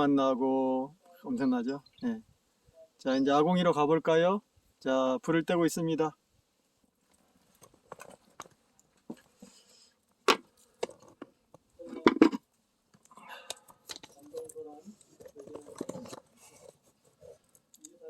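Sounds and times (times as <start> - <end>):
firewood knocking: 10.2 - 11.4.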